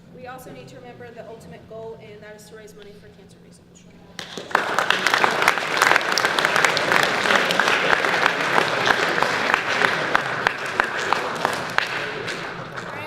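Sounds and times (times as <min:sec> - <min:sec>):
audience applauding: 0:04.2 - 0:13.0.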